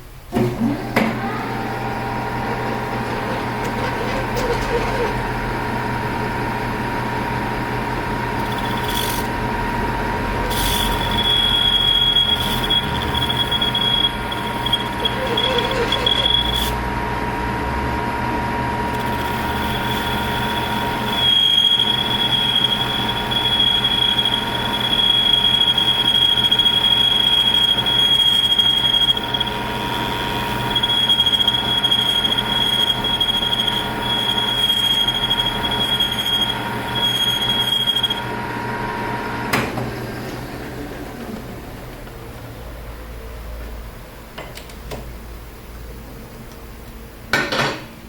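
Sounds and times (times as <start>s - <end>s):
lathe whine: 0.4s - 44.1s
cutting tool squealing on metal: 3.2s - 5.2s, 10.4s - 16.8s, 19.0s - 38.3s.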